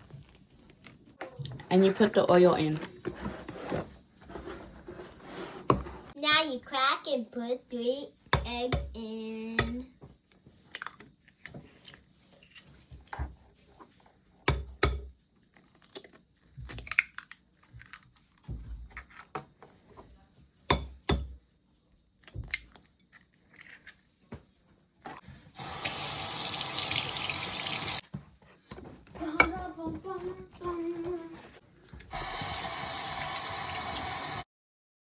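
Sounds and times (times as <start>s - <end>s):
tap water running into sink: 25.6s - 28.0s, 32.1s - 34.4s.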